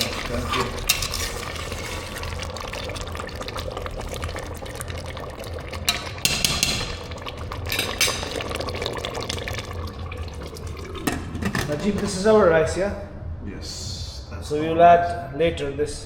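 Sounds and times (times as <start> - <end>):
hissing splash: 0.0 - 11.3
liquid pouring: 0.0 - 12.2
steady low hum: 0.0 - 16.0.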